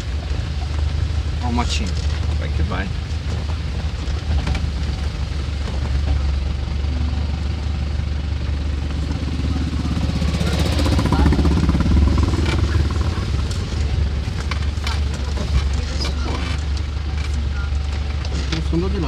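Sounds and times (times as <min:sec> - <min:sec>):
small motorcycle engine revving: 0:04.2 - 0:19.0.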